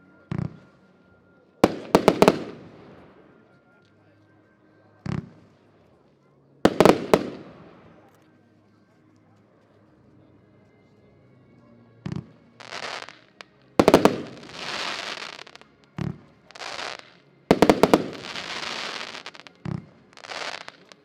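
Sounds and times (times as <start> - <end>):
firework sharp bangs: 1.7 - 2.7, 13.8 - 21.0
firework crackle: 1.7 - 2.8, 6.7 - 7.6, 12.6 - 15.7, 16.5 - 21.0
firework hiss: 13.9 - 15.6, 16.5 - 19.5, 20.2 - 21.0.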